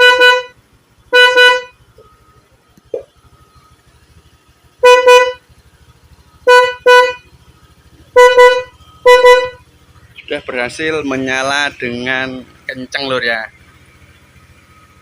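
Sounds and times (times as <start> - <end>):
scooter horn blasts: 0.0 - 2.1, 4.7 - 9.8.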